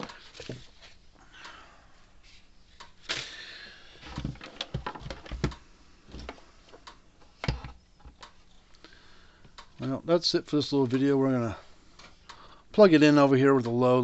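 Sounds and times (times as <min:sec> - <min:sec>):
objects knocking and clicking: 0:04.0 - 0:08.3.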